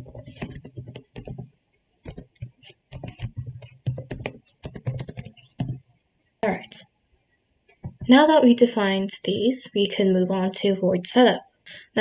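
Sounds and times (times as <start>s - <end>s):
keyboard typing clicks: 0.0s - 5.9s.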